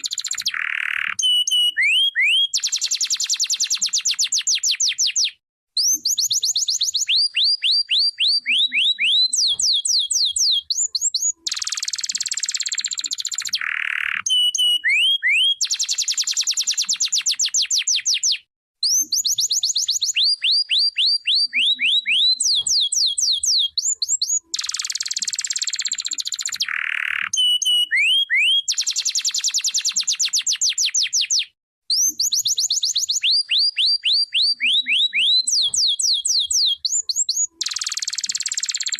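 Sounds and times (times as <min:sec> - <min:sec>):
canary singing: 0:00.0 - 0:38.9.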